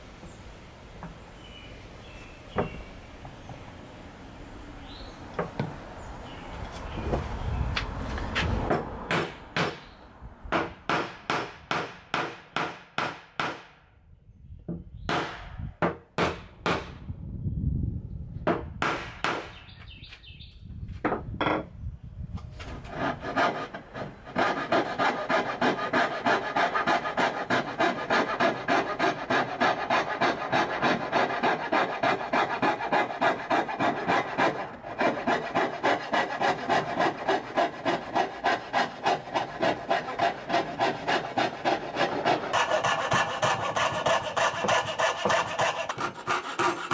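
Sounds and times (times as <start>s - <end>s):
hand tool rasping on wood: 22.9s - 46.9s.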